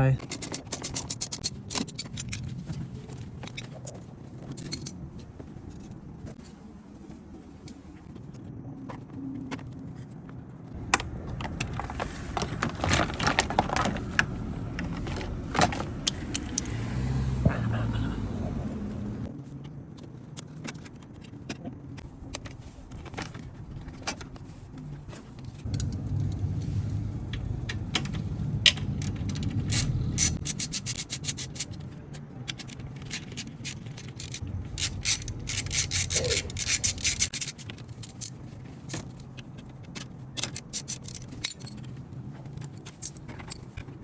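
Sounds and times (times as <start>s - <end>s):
tools and car parts clicking: 0.2s - 5.9s, 10.9s - 16.7s, 27.7s - 44.0s
low rumble: 25.7s - 30.4s
rapid clicks: 32.6s - 38.3s.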